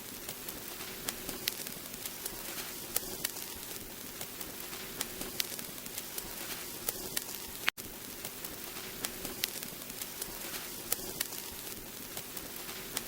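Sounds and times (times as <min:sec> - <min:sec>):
vinyl crackles and pops: 0:00.0 - 0:13.0
vinyl record hiss: 0:00.0 - 0:13.0.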